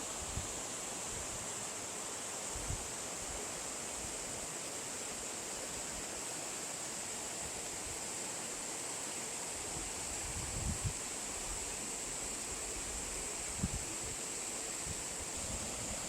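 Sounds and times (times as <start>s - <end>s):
stream flowing over rocks: 15.2s - 16.0s.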